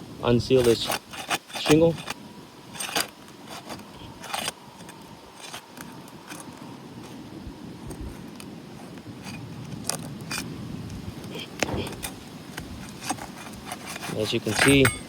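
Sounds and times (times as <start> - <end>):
low background noise: 0.0 - 15.0
roof shingle scraping and tearing: 0.5 - 7.2, 11.4 - 14.8.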